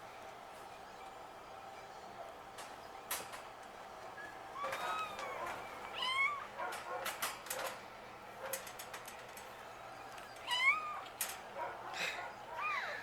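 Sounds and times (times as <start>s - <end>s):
cat meowing: 6.0s - 6.5s, 10.4s - 11.1s, 12.5s - 13.0s.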